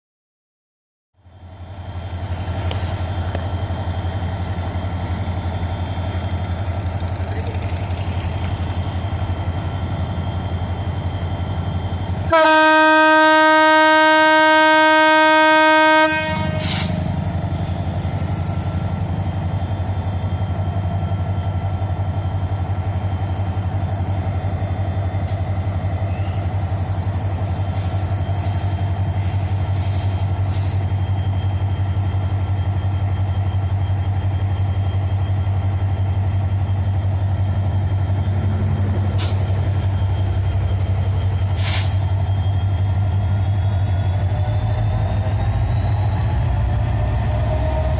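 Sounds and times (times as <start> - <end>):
locomotive engine droning: 1.2 - 47.9
loud train horn blast: 12.3 - 17.1.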